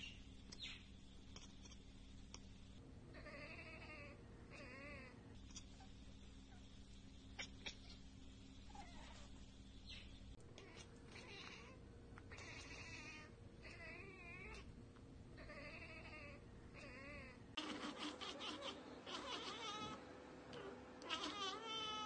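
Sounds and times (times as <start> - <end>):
cat chattering: 0.6 - 1.8, 3.2 - 6.6, 7.3 - 8.1, 10.6 - 14.7, 15.4 - 22.0.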